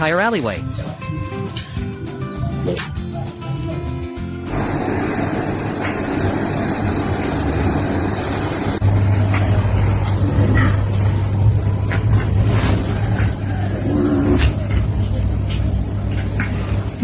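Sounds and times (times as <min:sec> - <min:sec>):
loud low engine hum: 0:01.9 - 0:17.0
motor rumble with hiss: 0:04.4 - 0:12.8.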